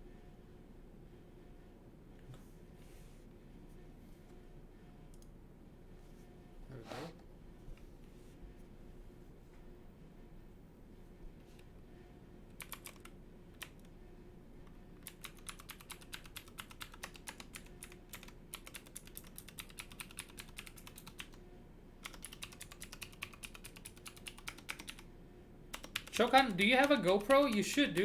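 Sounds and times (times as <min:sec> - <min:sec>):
mechanical keyboard typing: 0:12.6 - 0:13.9, 0:15.0 - 0:21.4, 0:22.0 - 0:25.0, 0:25.7 - 0:28.0.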